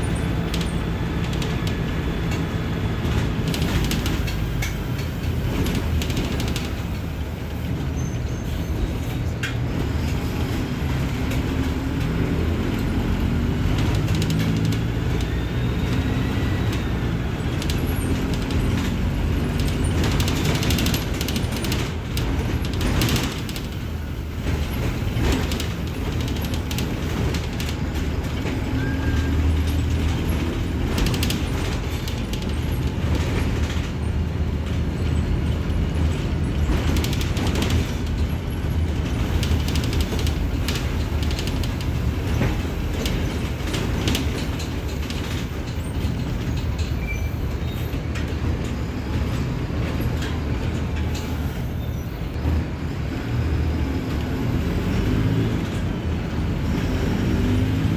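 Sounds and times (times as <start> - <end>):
bus body rattling and knocking: 0.0 - 57.9
bus diesel engine running: 0.0 - 57.9.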